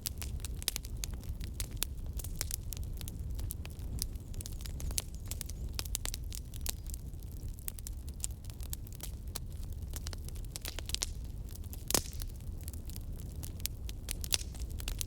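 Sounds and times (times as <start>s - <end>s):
campfire crackling: 0.0s - 15.0s
low rumble of flames: 0.0s - 15.0s
loud pop of fire: 11.8s - 12.3s.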